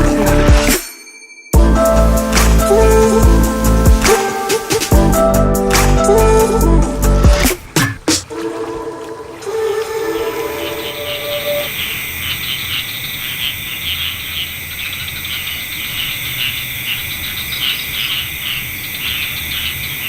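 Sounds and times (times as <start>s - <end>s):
insects chirping: 0.0s - 5.4s, 7.4s - 20.0s
music: 0.0s - 7.6s
high-pitched insect trill: 10.4s - 20.0s.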